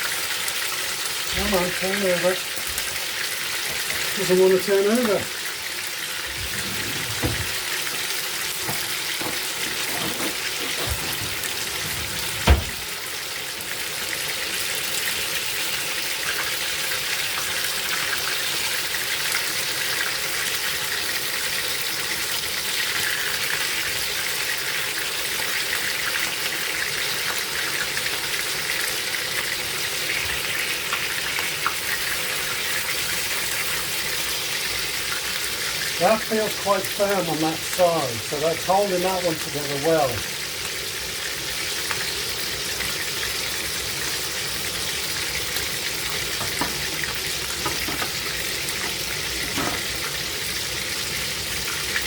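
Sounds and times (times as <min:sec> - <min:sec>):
sausages sizzling in a frying pan: 0:00.0 - 0:52.0
utensil knocking on pan: 0:08.6 - 0:12.8, 0:46.4 - 0:50.0.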